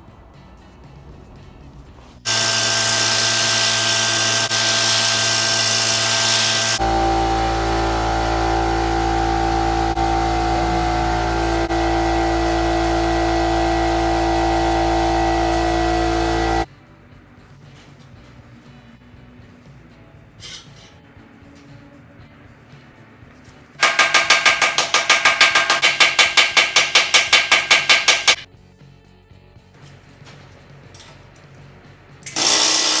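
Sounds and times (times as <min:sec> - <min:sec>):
power tool motor whine: 0:02.3 - 0:16.7, 0:32.3 - 0:33.0.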